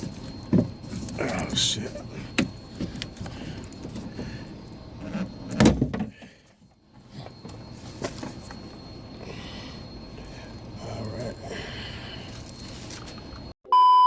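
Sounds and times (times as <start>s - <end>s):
clicks and rustling at car door: 2.3s - 4.3s, 5.0s - 6.3s.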